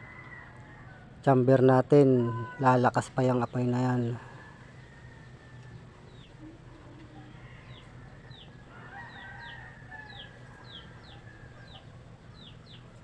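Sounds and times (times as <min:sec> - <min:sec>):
rooster crowing: 0:00.0 - 0:01.2, 0:04.2 - 0:06.2, 0:07.2 - 0:12.1
steady low hum: 0:00.0 - 0:13.0
chicks peeping: 0:05.6 - 0:13.0.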